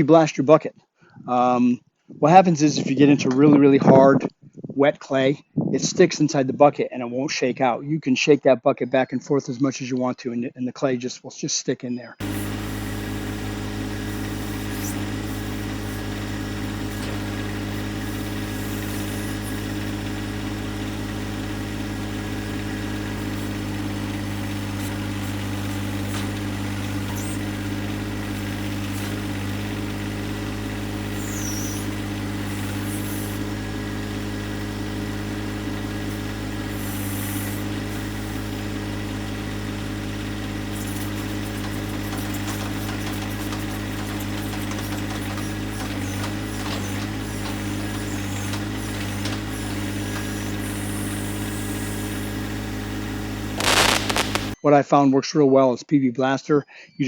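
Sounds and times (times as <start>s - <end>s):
tractor diesel engine running: 12.2s - 54.6s.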